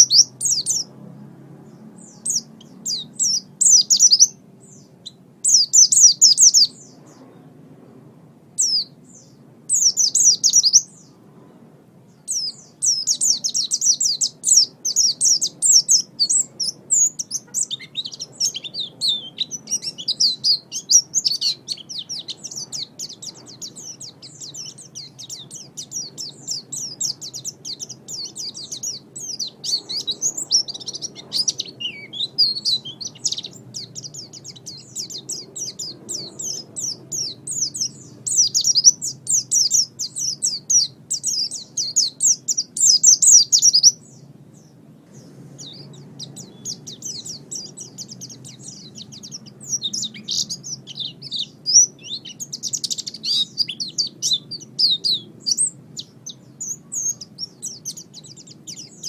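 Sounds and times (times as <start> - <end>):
bird twittering: 0.0 - 0.9, 1.6 - 7.5, 8.6 - 11.2, 12.1 - 59.0.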